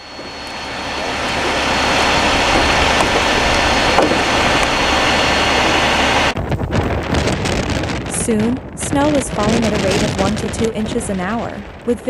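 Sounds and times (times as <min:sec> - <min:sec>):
road vehicle tyres and engine: 0:00.0 - 0:11.9.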